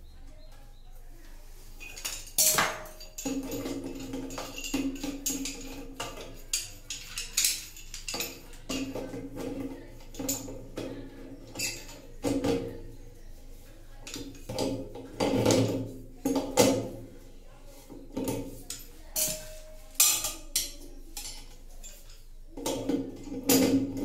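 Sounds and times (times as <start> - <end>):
hard objects clinking and knocking: 1.8 - 12.7.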